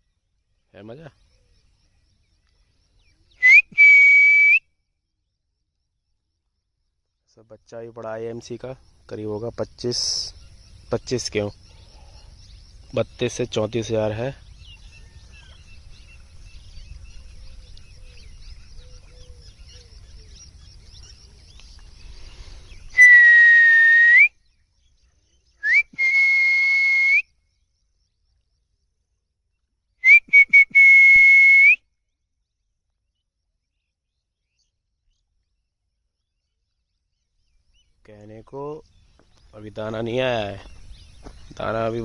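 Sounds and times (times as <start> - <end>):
bird chirps: 0.0 - 23.3, 24.0 - 42.0
insect chirps: 0.0 - 42.0
man whistling: 3.4 - 4.7, 22.9 - 24.4, 25.6 - 27.3, 30.0 - 31.8.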